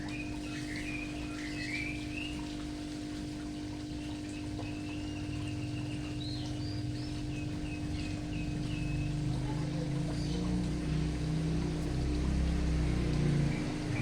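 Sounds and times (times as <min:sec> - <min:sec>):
low hum and rumble: 0:00.0 - 0:14.0
small songbird chirping: 0:00.1 - 0:02.5, 0:04.0 - 0:10.5.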